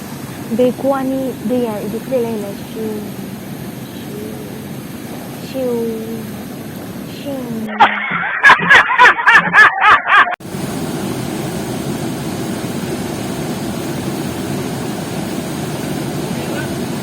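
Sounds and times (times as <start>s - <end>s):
person speaking: 0.5s - 3.3s, 3.9s - 4.7s, 5.4s - 6.3s, 7.1s - 8.1s.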